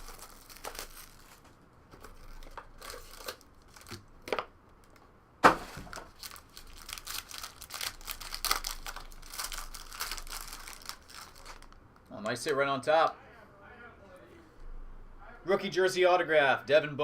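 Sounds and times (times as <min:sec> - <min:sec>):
plastic wrapping tearing and crinkling: 0:00.0 - 0:11.8.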